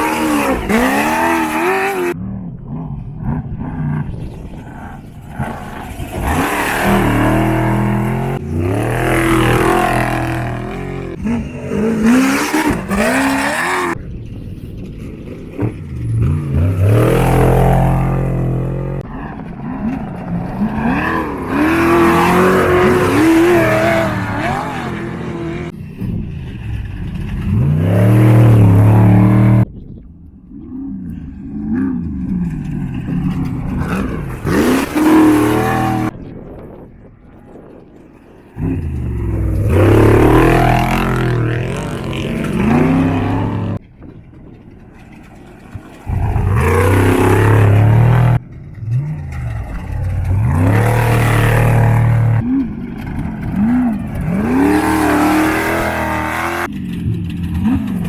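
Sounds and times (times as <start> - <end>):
race car engines revving past: 0.0 - 14.0, 15.6 - 29.7, 31.0 - 36.1, 38.6 - 43.8, 45.8 - 58.0.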